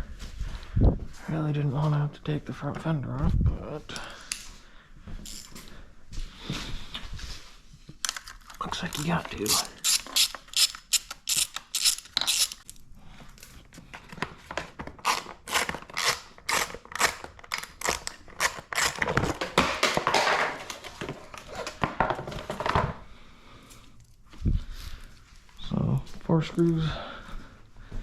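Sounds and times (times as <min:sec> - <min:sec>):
hand tools clicking on screws: 0:08.1 - 0:12.8.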